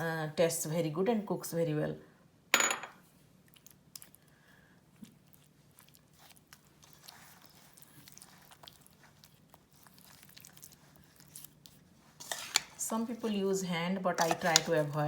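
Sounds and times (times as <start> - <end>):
spoon stirring wet marinade: 3.6 - 15.0.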